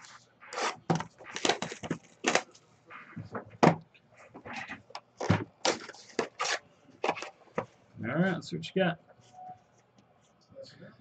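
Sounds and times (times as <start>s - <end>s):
cardboard and wrapper rustling: 0.0s - 2.6s, 4.3s - 7.7s.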